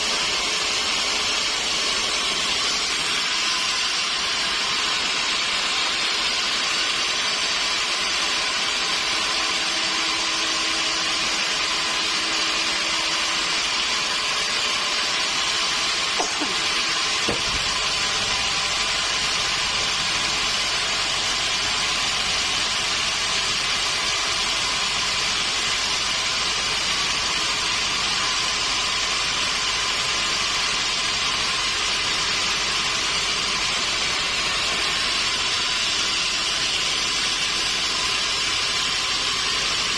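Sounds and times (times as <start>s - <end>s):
sawmill machinery running: 0.0s - 39.9s
knocks: 17.2s - 17.7s.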